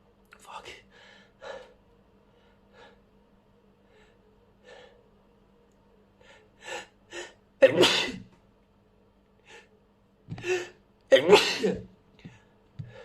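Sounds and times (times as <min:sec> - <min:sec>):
person sneezing: 0:07.6 - 0:08.3, 0:10.3 - 0:11.9.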